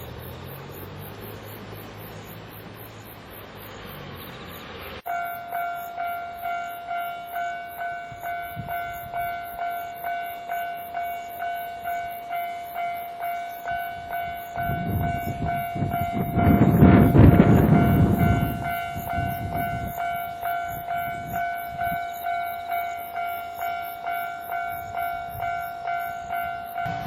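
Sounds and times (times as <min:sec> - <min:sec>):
low engine hum: 0:00.0 - 0:06.0
level crossing alarm bell: 0:05.0 - 0:27.0.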